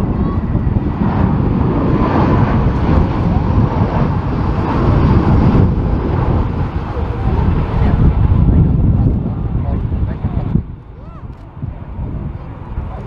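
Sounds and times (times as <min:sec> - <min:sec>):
jet engines rumbling: 0:00.0 - 0:13.0
wind buffeting microphone: 0:00.0 - 0:13.0.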